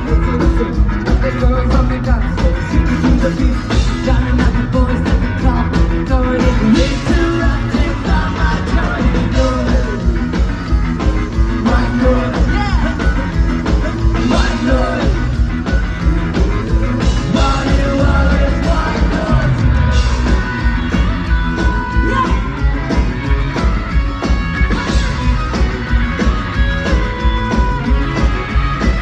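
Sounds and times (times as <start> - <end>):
person singing lead vocal: 0.0 - 10.5, 11.4 - 20.4, 21.9 - 22.6
ska-punk band playing live: 0.0 - 29.0.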